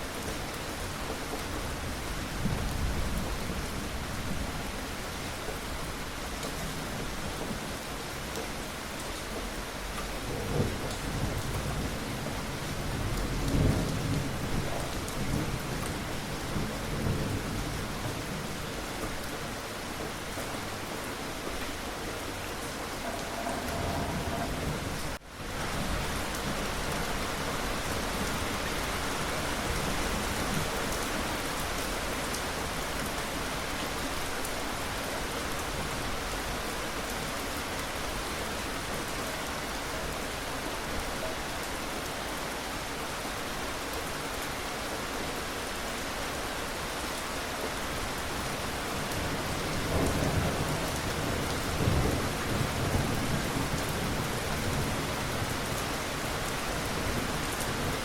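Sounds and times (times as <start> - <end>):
heavy rain falling: 0.0 - 58.0
thunder rumbling: 21.8 - 26.8.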